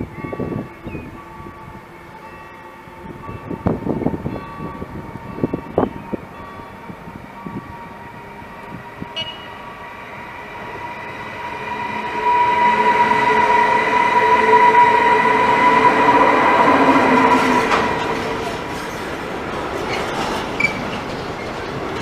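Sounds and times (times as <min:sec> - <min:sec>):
train wheels rolling on rails: 0:03.1 - 0:22.0
high whine: 0:04.9 - 0:18.8.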